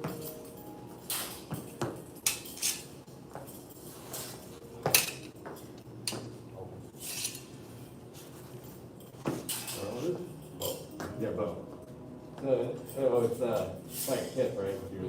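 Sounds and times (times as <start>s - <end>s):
butterfly knives clinking: 0.1s - 6.2s, 9.0s - 11.0s.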